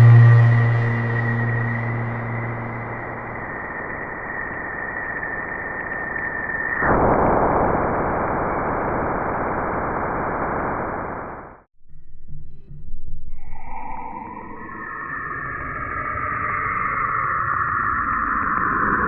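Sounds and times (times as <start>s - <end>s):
steady high tone: 0.0s - 4.8s
radio static hiss: 6.7s - 11.6s.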